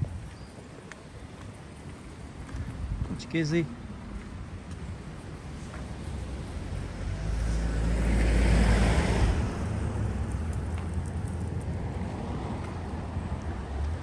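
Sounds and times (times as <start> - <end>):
car passing by: 5.4 - 14.0.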